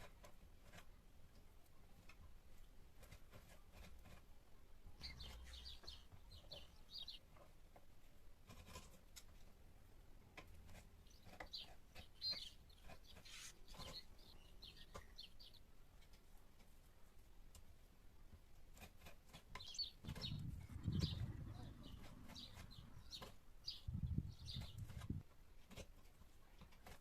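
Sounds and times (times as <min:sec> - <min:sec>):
faint bird chirping: 0:04.8 - 0:07.5, 0:10.6 - 0:16.1, 0:18.8 - 0:25.2.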